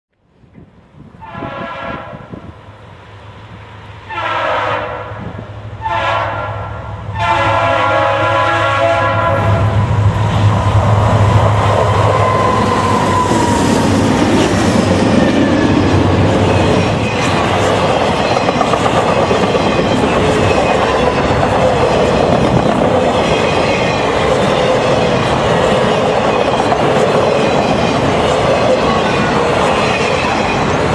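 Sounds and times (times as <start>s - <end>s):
rail and wheel noise: 0.1s - 30.9s
diesel locomotive engine: 0.2s - 30.9s
locomotive air horn blasts: 1.2s - 2.4s, 4.1s - 9.8s.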